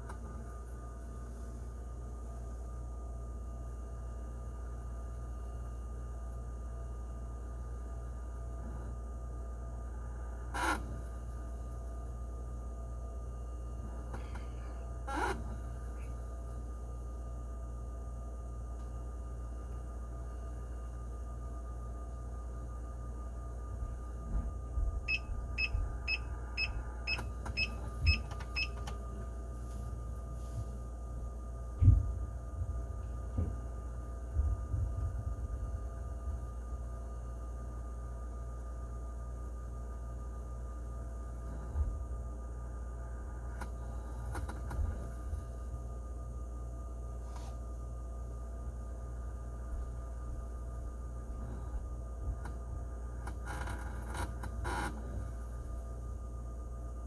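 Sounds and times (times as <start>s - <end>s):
refrigerator low pulsing hum: 0.0s - 57.0s
thin steady whine: 0.0s - 57.0s
short electronic beeps: 25.1s - 28.8s.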